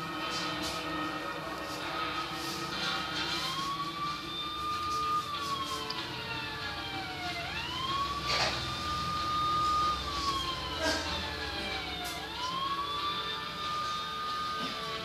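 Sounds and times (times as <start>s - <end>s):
siren wailing: 0.0s - 15.0s.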